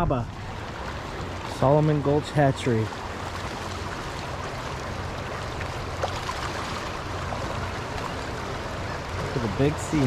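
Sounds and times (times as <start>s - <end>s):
water rushing: 0.0s - 10.0s.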